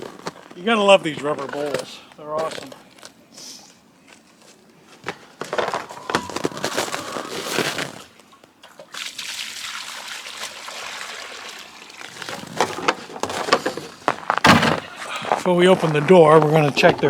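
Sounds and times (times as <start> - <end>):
water pouring into rubber bowl: 8.8 - 12.6.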